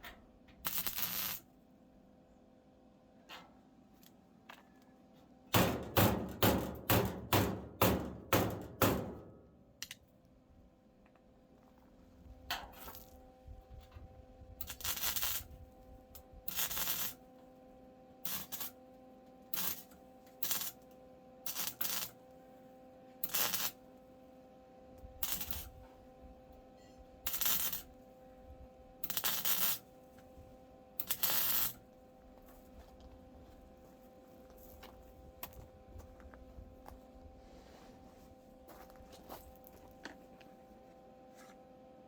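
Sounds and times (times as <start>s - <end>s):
welder crackling: 0.6s - 1.4s, 14.6s - 15.6s, 16.5s - 17.2s, 18.3s - 18.8s, 19.5s - 20.8s, 21.5s - 22.2s, 23.2s - 23.8s, 25.2s - 25.8s, 27.2s - 28.0s, 29.0s - 29.8s, 31.0s - 31.8s.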